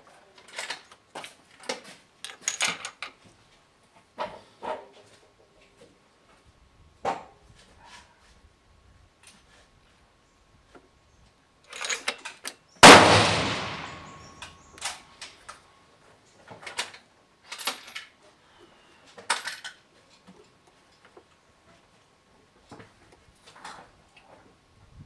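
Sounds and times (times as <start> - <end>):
rifle shot: 12.8 - 14.6.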